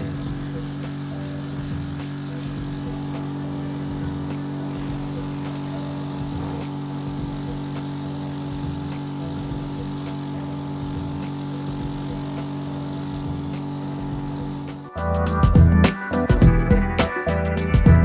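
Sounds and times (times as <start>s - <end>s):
nebulizer motor humming: 0.0s - 18.0s.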